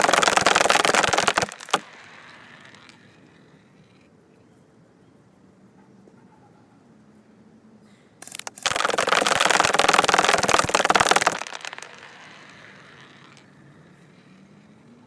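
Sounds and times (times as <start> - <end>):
airsoft rifle full-auto burst: 0.0 - 2.9, 8.2 - 13.3.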